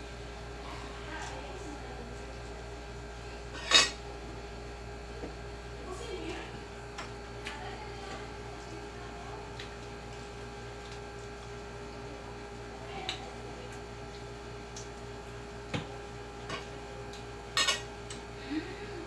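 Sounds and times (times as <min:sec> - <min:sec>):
electrical hum: 0:00.0 - 0:19.0
cutlery and dishes clinking: 0:17.6 - 0:17.9.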